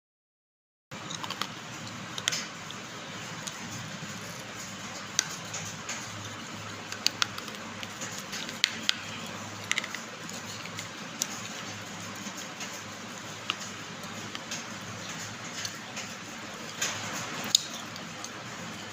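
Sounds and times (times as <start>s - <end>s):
clay pot pieces cracking: 1.0s - 2.7s, 6.8s - 18.4s.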